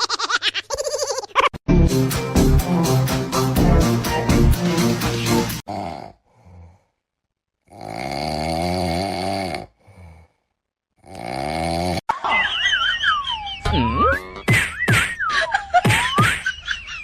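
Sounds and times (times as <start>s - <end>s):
pet snoring: 7.7s - 10.3s, 11.0s - 12.0s
comedic music with whistle tones: 13.3s - 16.4s.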